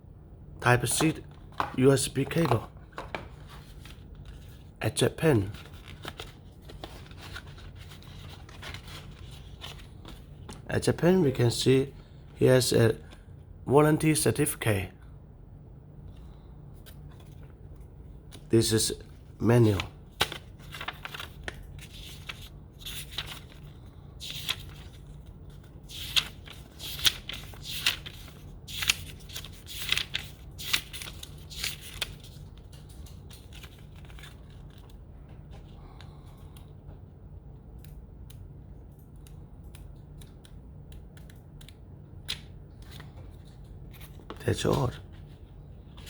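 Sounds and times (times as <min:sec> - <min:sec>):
steady low hum: 0:00.0 - 0:46.0
paper rustling and crinkling: 0:01.4 - 0:04.8, 0:05.4 - 0:10.7, 0:16.8 - 0:35.8.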